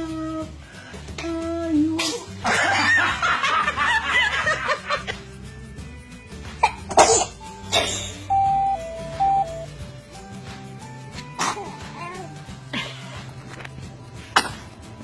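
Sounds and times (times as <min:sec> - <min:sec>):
simple melody background music: 0:00.0 - 0:15.0
baby sneezing: 0:02.0 - 0:02.4, 0:06.6 - 0:08.3, 0:11.2 - 0:12.3, 0:14.3 - 0:14.8.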